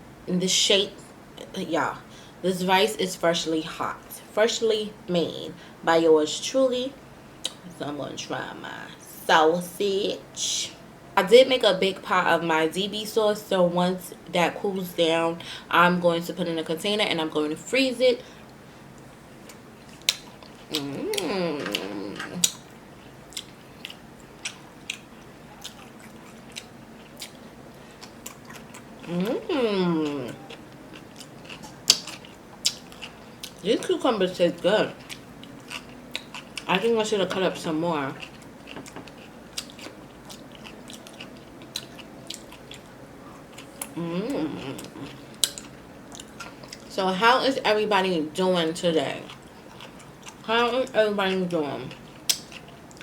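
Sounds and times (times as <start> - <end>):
person humming: 20.7 - 22.5, 29.1 - 30.4, 44.0 - 45.1
chewing clicks: 23.3 - 27.4, 30.9 - 33.6, 38.2 - 42.9, 44.8 - 46.9, 52.2 - 53.0.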